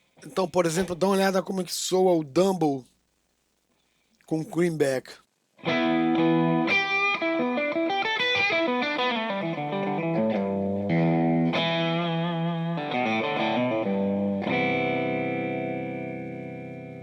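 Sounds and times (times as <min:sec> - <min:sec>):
electric guitar notes and chords: 0:05.6 - 0:17.0.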